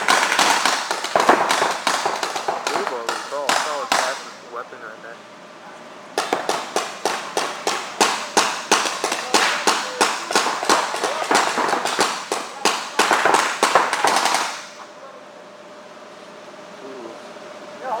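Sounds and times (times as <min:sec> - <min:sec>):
markers firing sharp cracks: 0:00.0 - 0:04.3, 0:06.2 - 0:14.8.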